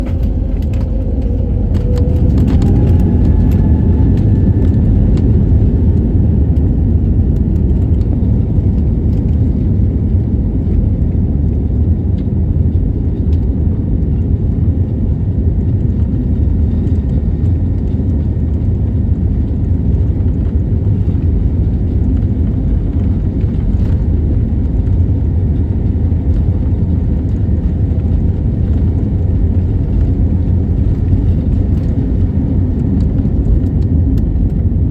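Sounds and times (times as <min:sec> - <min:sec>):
faint rising whine: 0:00.0 - 0:07.0
airliner engines rumbling: 0:00.0 - 0:34.9.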